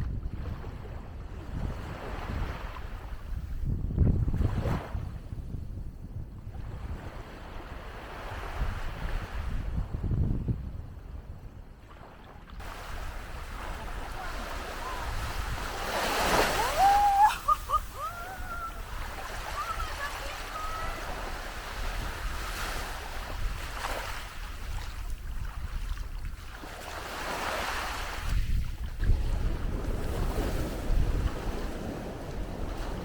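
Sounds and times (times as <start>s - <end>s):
wind buffeting microphone: 0.0s - 33.0s
surf washing onto beach: 12.6s - 33.0s
short high-pitched cries: 16.6s - 21.1s.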